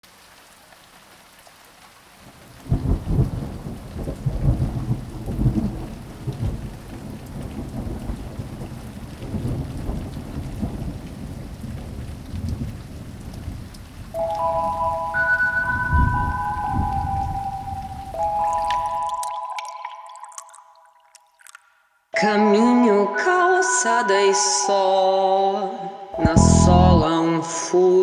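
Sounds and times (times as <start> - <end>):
rain falling: 0.0 - 21.3.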